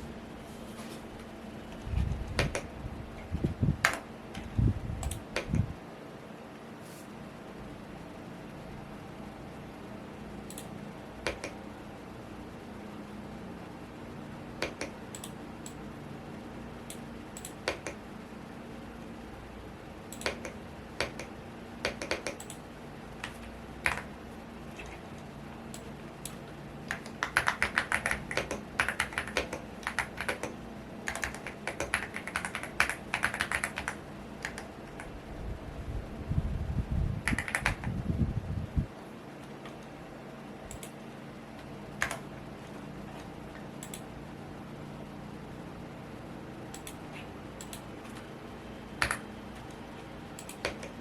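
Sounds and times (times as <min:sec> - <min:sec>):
fan humming: 0:00.0 - 0:51.0
typing on mechanical keyboard: 0:23.2 - 0:24.1, 0:26.9 - 0:35.1, 0:37.2 - 0:37.9, 0:49.0 - 0:49.2.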